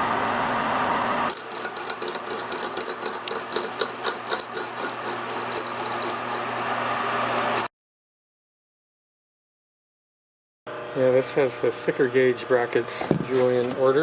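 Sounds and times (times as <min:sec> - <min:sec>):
milling machine cutting metal: 0:01.3 - 0:07.7.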